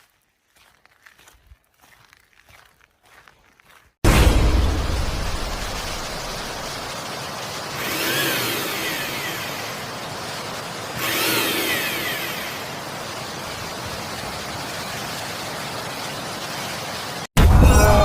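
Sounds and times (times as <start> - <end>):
steady hiss: 4.1 - 17.3.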